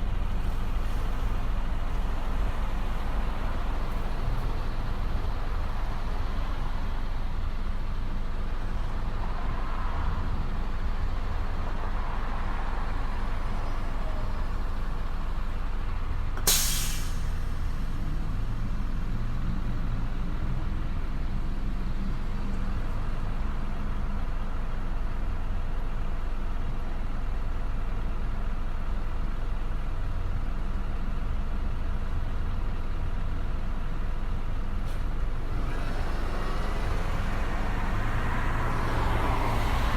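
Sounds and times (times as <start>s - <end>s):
traffic rumble: 0.0s - 39.9s
short sharp hiss: 16.4s - 18.0s.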